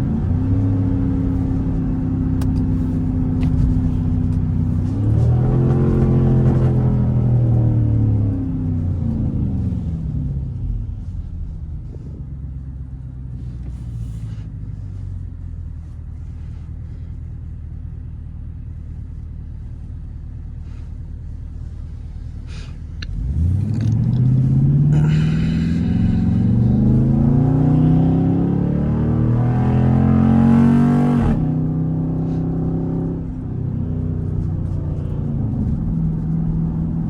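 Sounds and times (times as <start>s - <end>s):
car exhaust revving: 0.0s - 9.8s, 19.7s - 37.0s.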